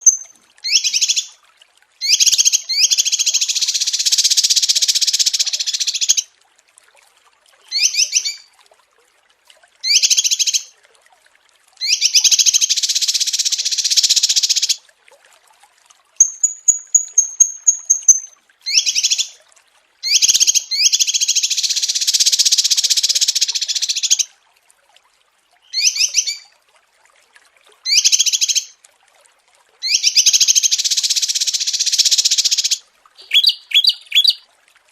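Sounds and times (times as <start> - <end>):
songbirds chattering and trilling: 33.2 - 34.4.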